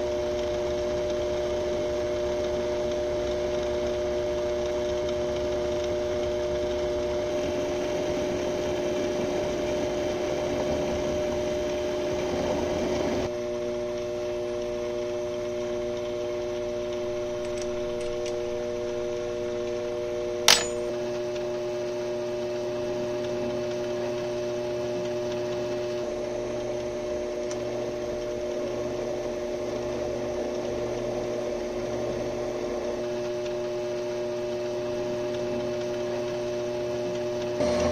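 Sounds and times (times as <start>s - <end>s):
benchtop machine motor hum: 0.0s - 37.9s
sharp click: 20.5s - 21.0s.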